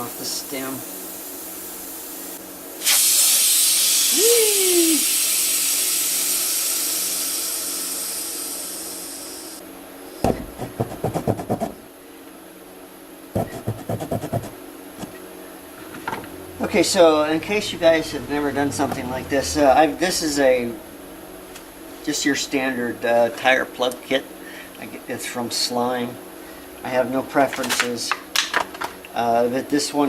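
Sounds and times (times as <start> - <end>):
air hissing out of tire valve: 0.0 - 10.2.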